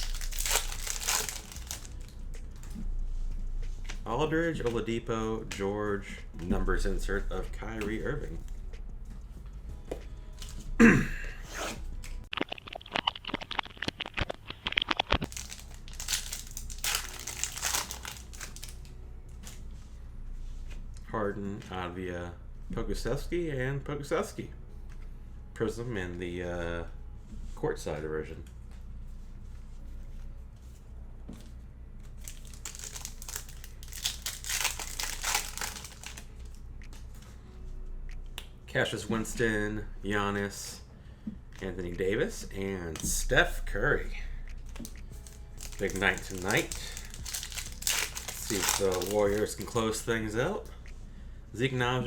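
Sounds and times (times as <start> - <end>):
wrapper crinkling: 0.0 - 2.8, 12.1 - 19.6, 32.2 - 36.6, 44.7 - 50.1
wrapper tearing: 0.0 - 2.8, 11.5 - 18.9, 32.2 - 36.5, 44.7 - 50.0.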